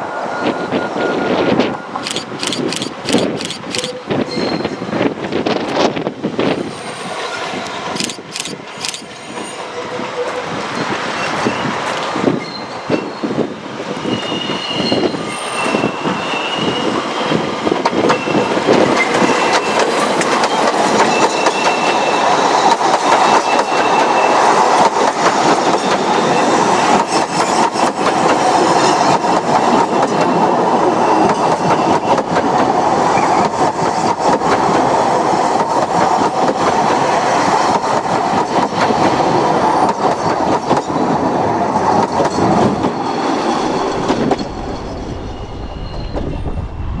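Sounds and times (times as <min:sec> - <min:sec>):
train wheel clatter: 0:02.0 - 0:06.6, 0:17.6 - 0:46.8.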